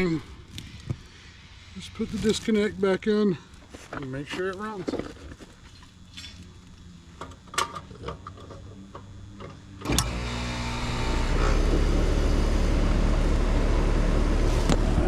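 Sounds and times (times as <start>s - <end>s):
heat pump running hum: 0.0s - 15.0s.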